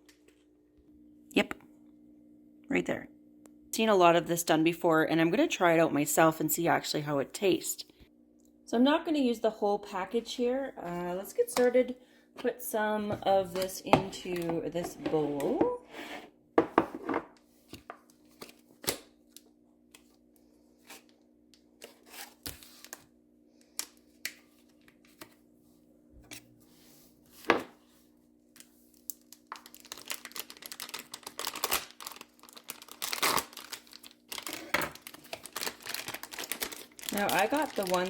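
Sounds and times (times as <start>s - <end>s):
faint steady hum: 0.0s - 16.6s
plastic packaging crinkling: 28.6s - 38.0s.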